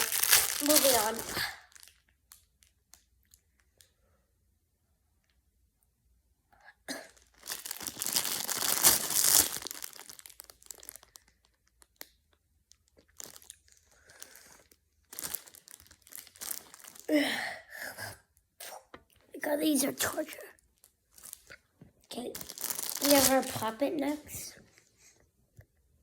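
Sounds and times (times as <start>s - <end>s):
packaging crinkling and tearing: 0.0s - 3.4s, 6.9s - 17.1s, 20.8s - 24.3s
rustling and handling noise: 0.0s - 3.9s, 12.7s - 17.1s, 19.0s - 25.5s.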